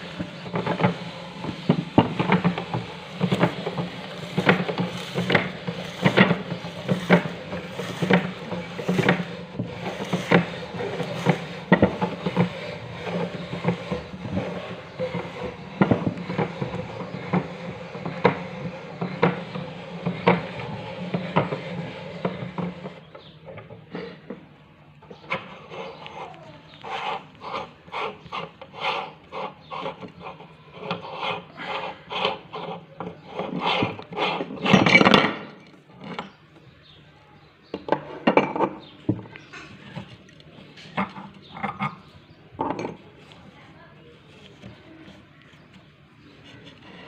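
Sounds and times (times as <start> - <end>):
meat grinder humming: 0.0 - 34.9.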